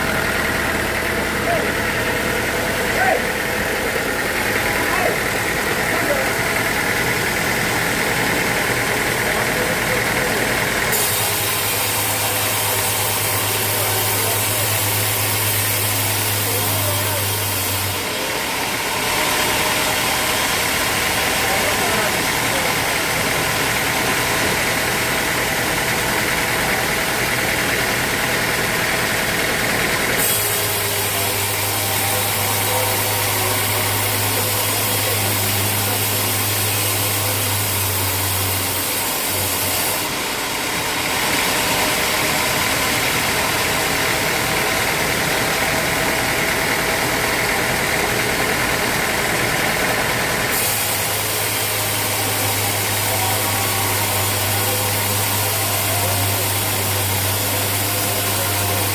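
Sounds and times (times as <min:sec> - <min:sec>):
sawmill machinery humming: 0:00.0 - 0:58.9.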